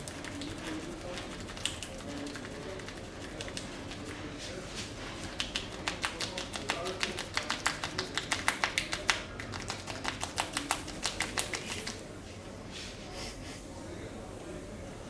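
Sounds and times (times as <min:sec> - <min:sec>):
hand slaps: 0:05.4 - 0:12.0.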